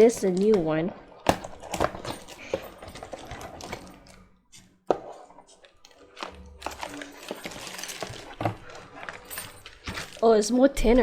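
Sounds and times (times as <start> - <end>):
keyboard keys clicking and rattling: 1.5 - 4.3, 5.7 - 10.4.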